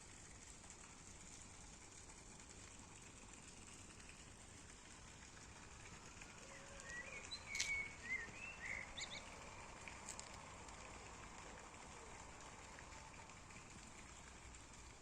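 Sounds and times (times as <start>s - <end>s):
faint outdoor hiss: 0.0s - 15.0s
songbird singing: 6.4s - 9.4s.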